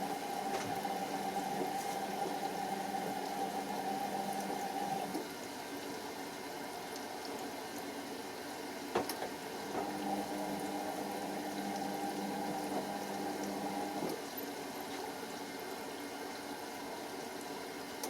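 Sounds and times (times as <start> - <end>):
washing machine drum motor hum: 0.0 - 5.4, 8.8 - 15.4
water running into drum: 0.0 - 5.6, 8.6 - 17.6.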